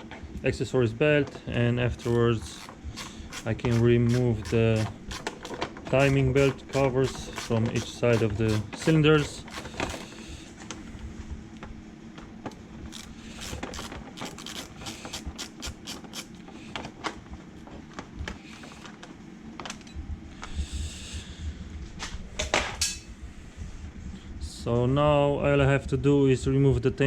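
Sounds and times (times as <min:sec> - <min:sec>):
hand tools clicking and knocking: 0:02.0 - 0:10.1, 0:12.9 - 0:16.3.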